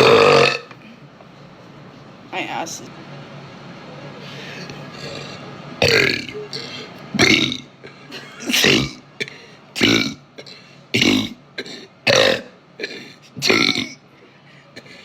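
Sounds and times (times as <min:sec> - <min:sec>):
woman burping: 0:00.0 - 0:00.8, 0:05.8 - 0:09.0, 0:09.8 - 0:14.0.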